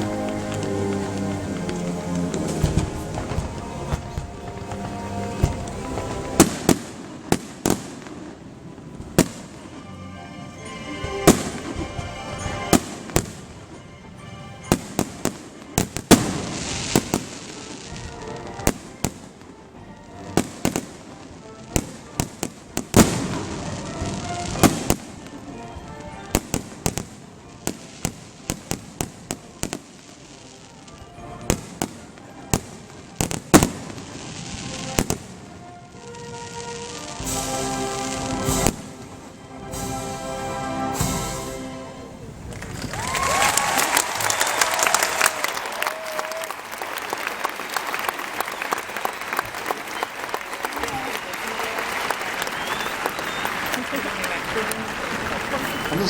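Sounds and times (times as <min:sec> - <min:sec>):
fireworks bangs: 0:00.0 - 0:09.8, 0:10.6 - 0:13.8, 0:14.6 - 0:19.6, 0:20.3 - 0:25.4, 0:26.3 - 0:56.0
music: 0:00.0 - 0:45.8, 0:46.5 - 0:56.0
fireworks crackling: 0:00.0 - 0:56.0.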